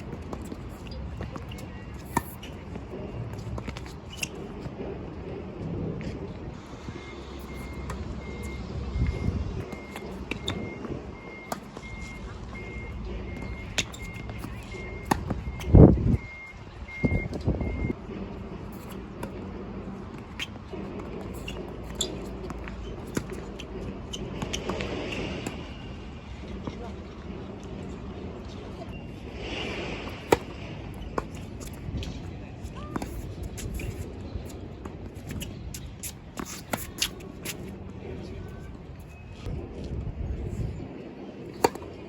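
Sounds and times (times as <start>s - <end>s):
wind buffeting microphone: 4.6s - 18.8s, 37.3s - 42.0s
racket hitting tennis ball: 13.3s - 15.4s, 29.5s - 37.8s, 41.5s - 42.0s.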